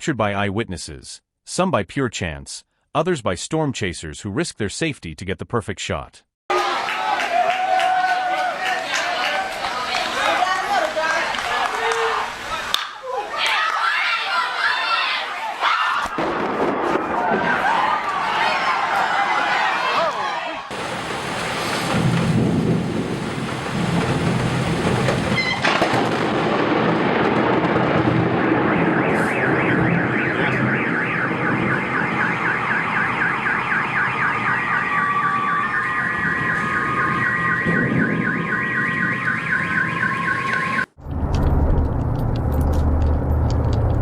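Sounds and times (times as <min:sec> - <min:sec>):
car alarm warbling: 0:28.2 - 0:41.0.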